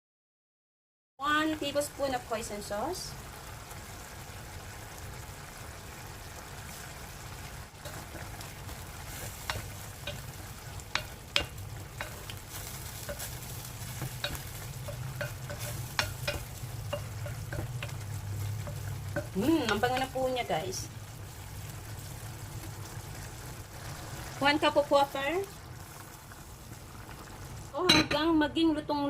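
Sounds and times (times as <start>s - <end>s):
meat sizzling in a pan: 1.3s - 27.8s
utensil tapping against pan: 9.4s - 12.4s, 13.9s - 20.2s.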